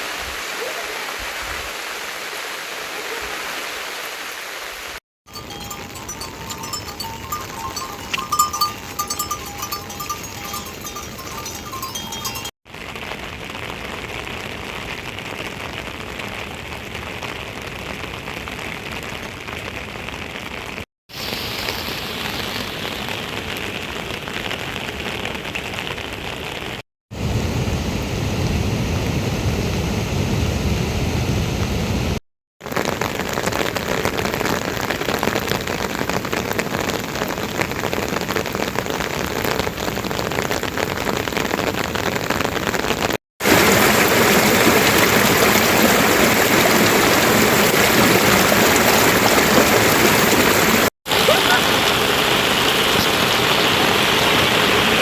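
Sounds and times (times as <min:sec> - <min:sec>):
heavy rain pouring: 0:00.0 - 0:30.5, 0:31.3 - 0:55.0.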